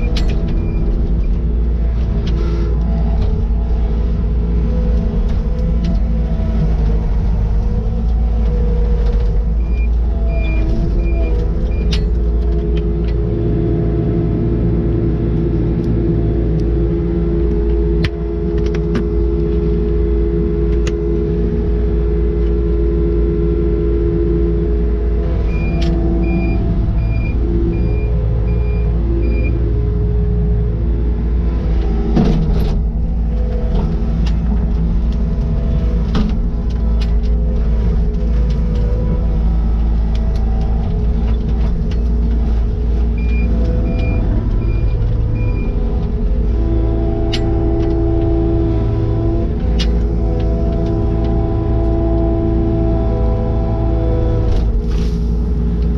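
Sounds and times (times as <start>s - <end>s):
diesel engine running: 0.0s - 55.9s
backup alarm beeping: 25.5s - 29.6s
knocks and clanks: 31.8s - 45.4s.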